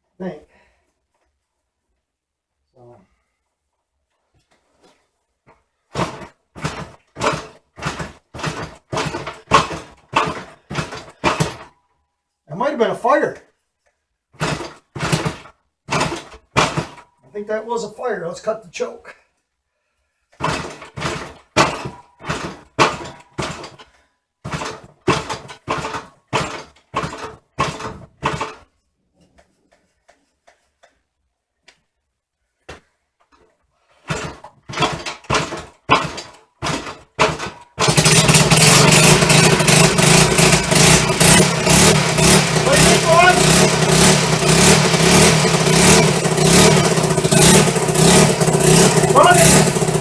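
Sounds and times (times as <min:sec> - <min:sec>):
motorcycle kick-start strokes: 0:05.9 - 0:11.8, 0:14.4 - 0:17.2, 0:20.4 - 0:28.8, 0:33.9 - 0:50.0
motorcycle engine running: 0:06.0 - 0:11.7, 0:14.4 - 0:17.0, 0:34.2 - 0:50.0.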